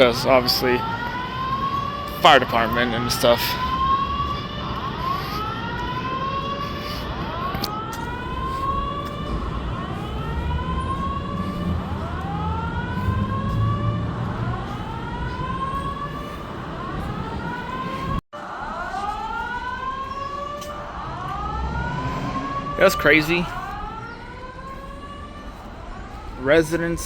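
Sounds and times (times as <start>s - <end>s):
fire alarm whoop tone: 0.0s - 27.0s.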